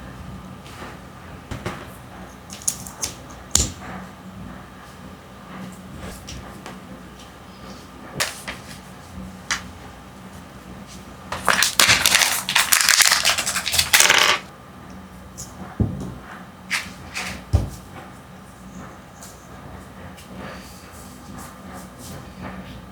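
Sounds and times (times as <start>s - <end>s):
plastic packaging crinkling and tearing: 11.4s - 14.0s
plastic toy pieces clicking: 11.5s - 14.4s.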